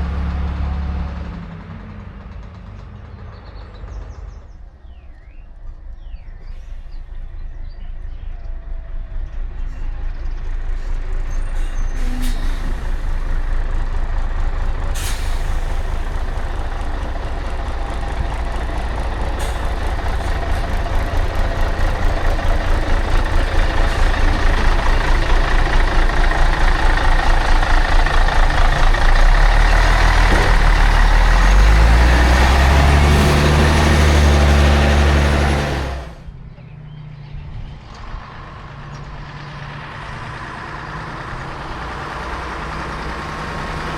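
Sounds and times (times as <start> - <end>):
diesel bus engine accelerating: 0.0 - 43.9
short air hisses: 15.0 - 16.2.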